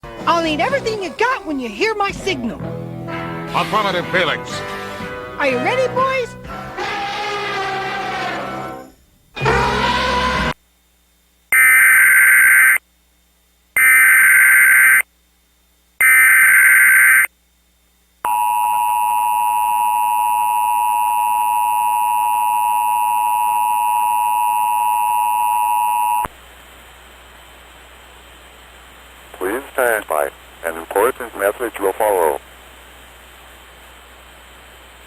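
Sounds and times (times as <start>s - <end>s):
warbling data screech: 11.5s - 12.8s, 13.8s - 15.0s, 16.0s - 17.3s
two-tone attention signal: 16.0s - 17.3s, 18.3s - 26.3s
low hiss: 23.5s - 35.0s.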